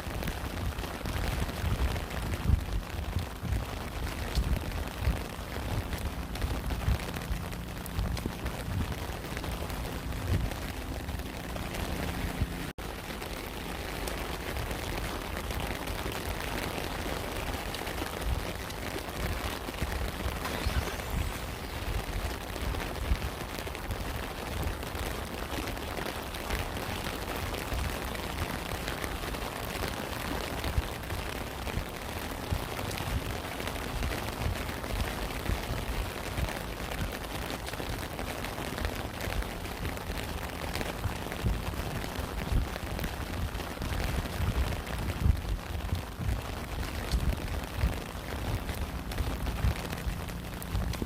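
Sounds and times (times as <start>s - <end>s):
rain patter: 0.0s - 51.0s.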